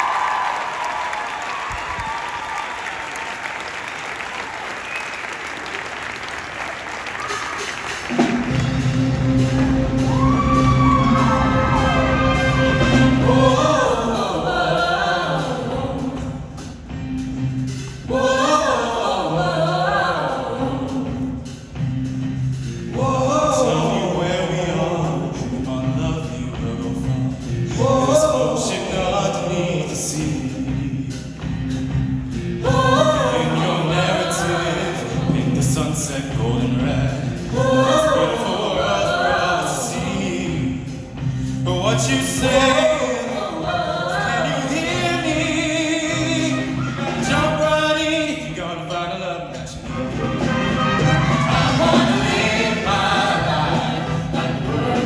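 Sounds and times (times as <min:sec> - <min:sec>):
instrumental accompaniment: 0:07.8 - 0:14.3, 0:49.8 - 0:55.0
choir singing: 0:08.1 - 0:16.7, 0:17.7 - 0:21.6, 0:22.8 - 0:31.5, 0:32.3 - 0:55.0.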